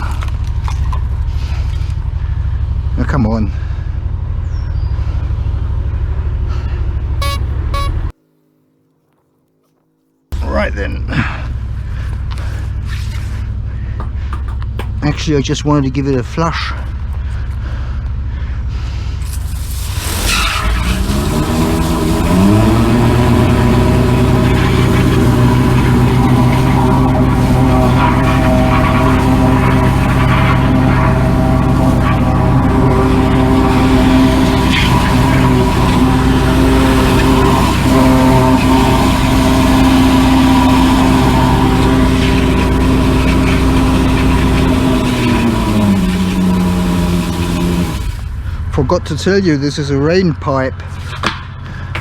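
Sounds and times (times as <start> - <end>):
engine and pump revving up: 5.0 - 8.1, 11.1 - 49.4
drain-jetting machine running: 19.2 - 48.7.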